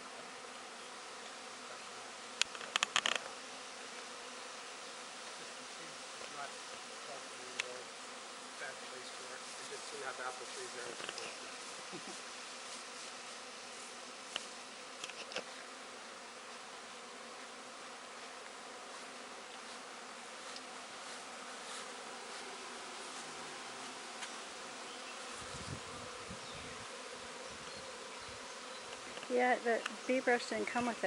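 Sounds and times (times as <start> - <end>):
bees buzzing: 0.0 - 31.0
small clicks: 2.4 - 3.3.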